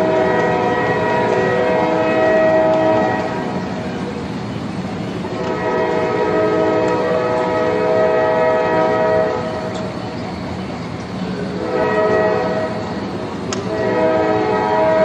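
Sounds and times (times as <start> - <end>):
train horn blasts: 0.0 - 3.7, 5.2 - 9.8, 11.5 - 13.0, 13.6 - 15.0
train running noise: 0.0 - 15.0.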